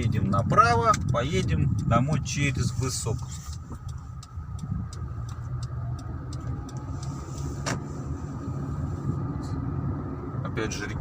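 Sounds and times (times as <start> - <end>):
light ticks: 0.0 - 7.9
car engine and tyre rumble: 0.0 - 11.0.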